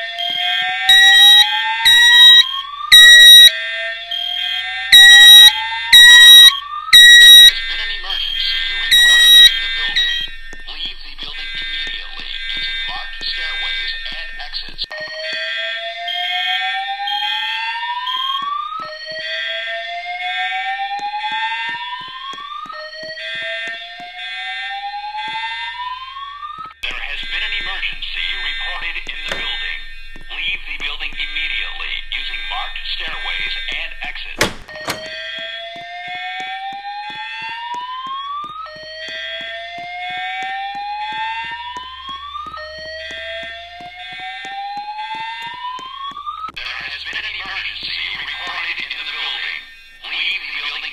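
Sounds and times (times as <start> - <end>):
fire alarm whoop tone: 0.0 - 46.6
sharp clicks: 34.4 - 35.2.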